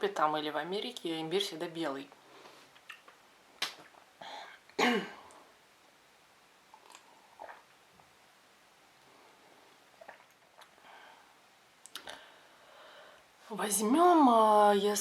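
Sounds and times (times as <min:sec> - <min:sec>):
wet chewing clicks: 0:02.8 - 0:04.0, 0:06.7 - 0:07.7
mouth click: 0:11.8 - 0:12.2.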